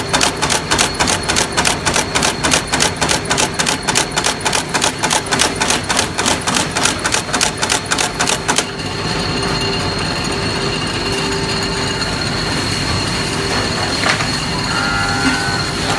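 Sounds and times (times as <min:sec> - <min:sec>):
machine clacking rapidly: 0:00.0 - 0:08.8
mechanical whirr with high whine: 0:00.0 - 0:15.9.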